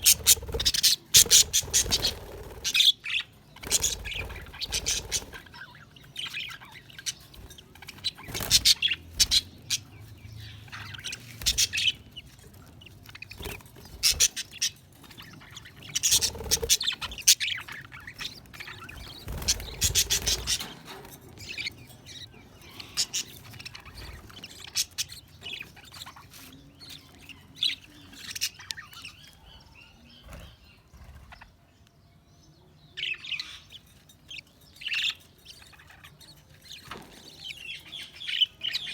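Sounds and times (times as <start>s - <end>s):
budgerigars chirping and warbling: 0.0s - 38.9s.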